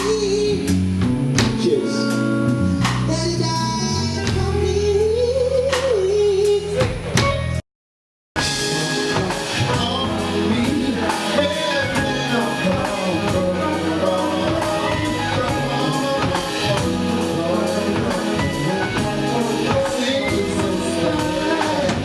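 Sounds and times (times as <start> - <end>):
live band music: 0.0 - 7.6, 8.4 - 22.0
person singing: 1.6 - 6.9, 8.4 - 22.0.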